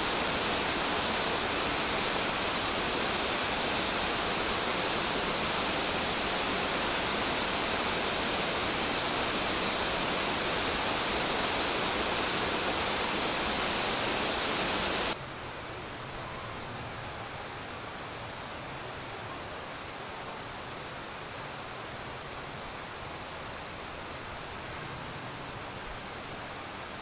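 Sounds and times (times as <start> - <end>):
water rushing over rock: 0.0 - 15.2.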